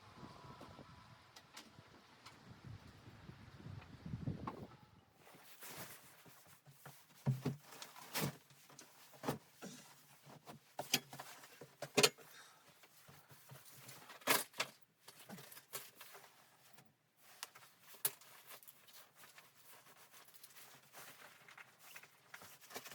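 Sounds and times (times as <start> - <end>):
objects knocking and clattering: 6.8 - 8.4.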